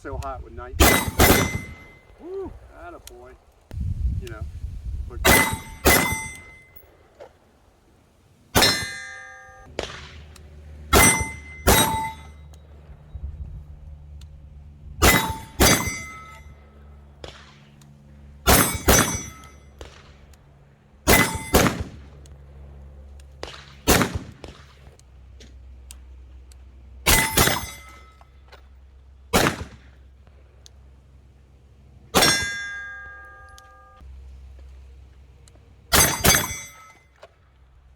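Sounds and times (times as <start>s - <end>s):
bullets ringing on steel targets: 0.1s - 2.2s, 5.2s - 7.1s, 8.5s - 13.0s, 15.0s - 20.2s, 21.1s - 22.2s, 27.0s - 28.8s, 32.1s - 34.1s, 35.9s - 37.3s
pistol shots: 0.8s - 2.2s, 5.2s - 6.8s, 8.5s - 12.4s, 15.0s - 16.2s, 18.5s - 20.3s, 21.0s - 22.2s, 23.4s - 25.0s, 27.1s - 28.0s, 29.3s - 30.0s, 32.2s - 33.2s, 35.9s - 37.0s.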